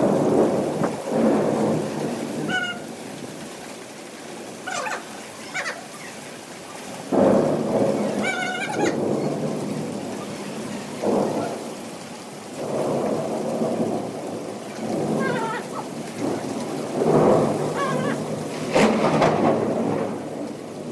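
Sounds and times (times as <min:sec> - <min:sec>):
thunder rumbling: 0:00.0 - 0:05.3, 0:06.2 - 0:20.9
steady rain: 0:00.0 - 0:20.9
animal short call: 0:08.0 - 0:09.0, 0:15.2 - 0:16.4, 0:17.7 - 0:18.3.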